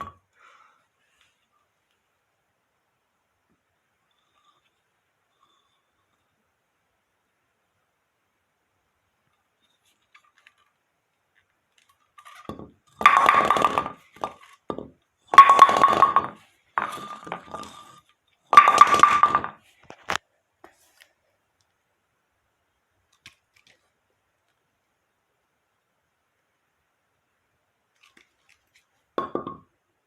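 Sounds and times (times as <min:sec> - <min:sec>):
bowling pins clattering: 0:12.6 - 0:14.4, 0:15.4 - 0:17.9, 0:18.6 - 0:19.6.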